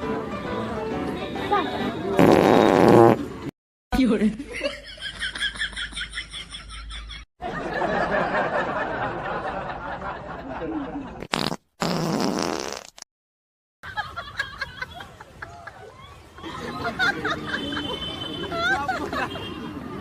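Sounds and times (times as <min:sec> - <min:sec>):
wet fart sounds: 0:02.2 - 0:03.3, 0:11.2 - 0:13.1.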